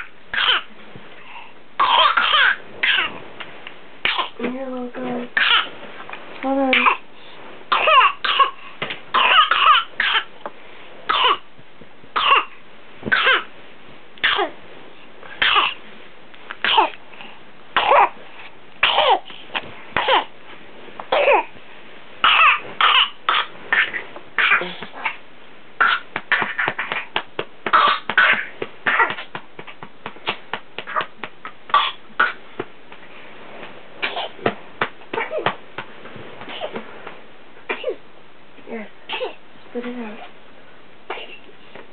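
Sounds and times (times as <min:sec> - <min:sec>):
person coughing: 0:22.3 - 0:24.9.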